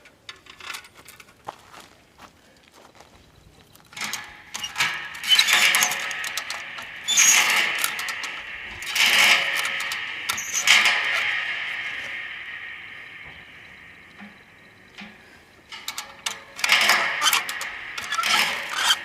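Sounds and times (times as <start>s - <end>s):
metal tank scraping and clanking: 3.9s - 19.0s.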